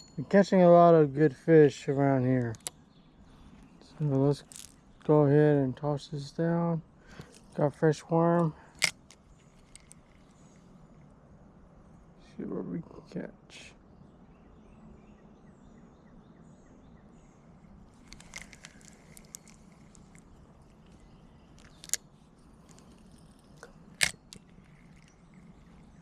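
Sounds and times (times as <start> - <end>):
sharp clicks: 8.8 - 10.4, 18.0 - 22.0, 22.6 - 26.0
rustling: 17.9 - 26.0.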